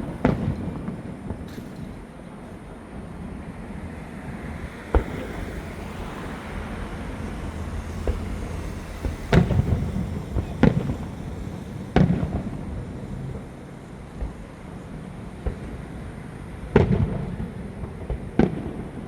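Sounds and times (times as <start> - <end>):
fireworks banging: 0.0 - 16.1, 16.7 - 19.0.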